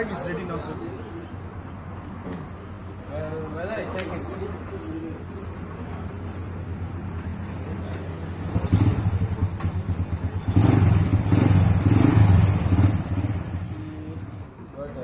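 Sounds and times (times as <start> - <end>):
motorcycle engine revving: 8.2 - 14.5.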